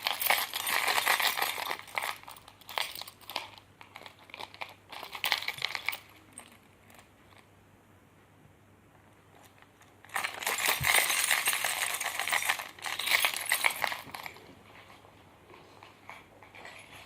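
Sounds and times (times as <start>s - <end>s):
metal keys jangling: 0.0s - 3.6s, 10.1s - 14.4s.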